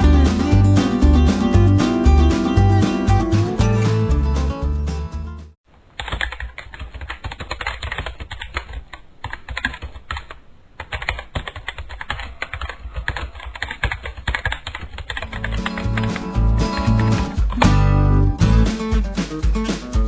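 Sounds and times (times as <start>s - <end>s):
acoustic guitar music: 0.0s - 5.6s, 15.2s - 20.0s
keyboard typing clicks: 6.0s - 17.6s.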